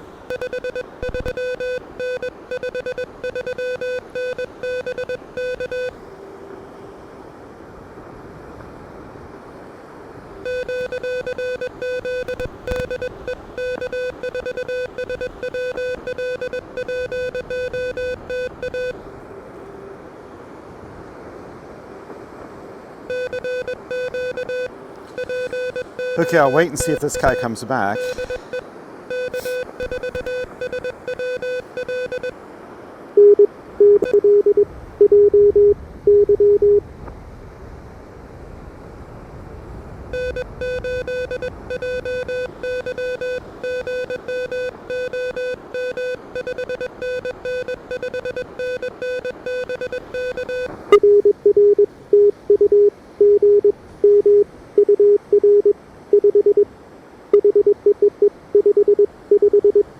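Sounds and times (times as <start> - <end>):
morse code tones: 0.0 - 6.0, 10.4 - 19.0, 23.1 - 32.4, 33.2 - 36.8, 40.2 - 56.7, 57.4 - 59.9
radio band hiss: 24.9 - 31.8.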